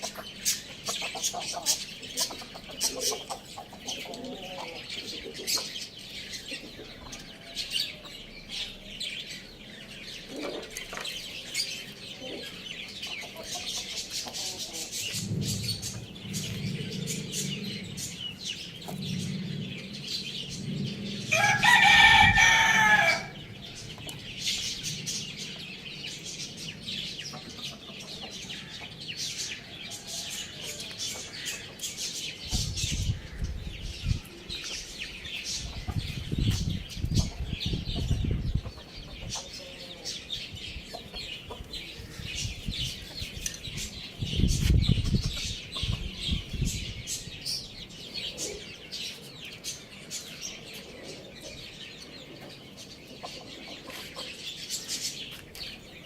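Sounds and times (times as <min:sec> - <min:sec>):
hens clucking: 0:00.0 - 0:05.8, 0:12.1 - 0:18.1, 0:52.2 - 0:55.8
small birds chirping: 0:00.0 - 0:56.0
rooster crowing: 0:21.3 - 0:23.4.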